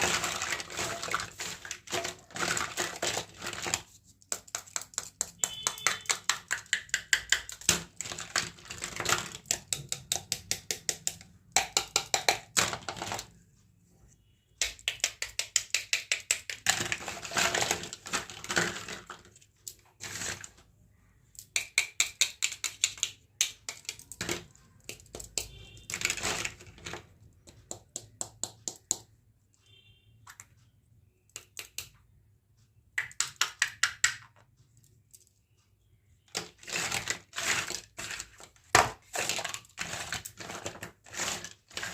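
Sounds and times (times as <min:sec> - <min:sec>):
plastic toy pieces clicking: 0:00.0 - 0:13.4, 0:14.6 - 0:20.2, 0:21.3 - 0:29.1.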